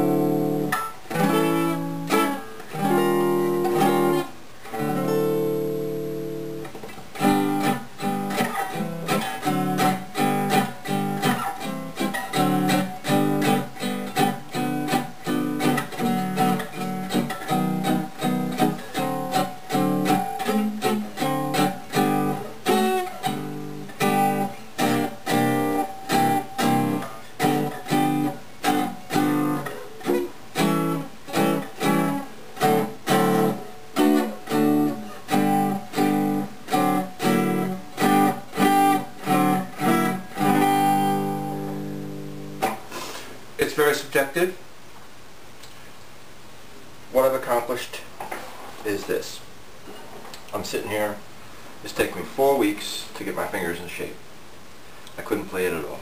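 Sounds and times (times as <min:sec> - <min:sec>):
acoustic guitar strumming: 0:00.0 - 0:43.3.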